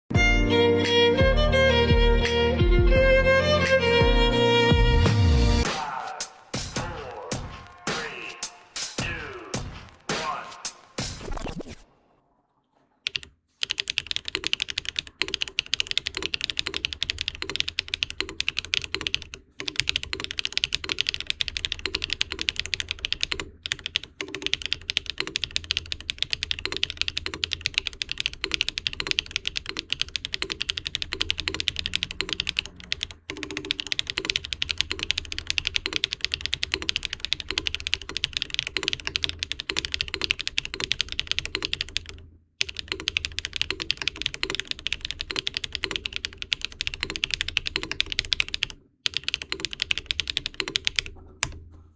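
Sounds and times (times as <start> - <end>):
mechanical keyboard typing: 13.1 - 51.6.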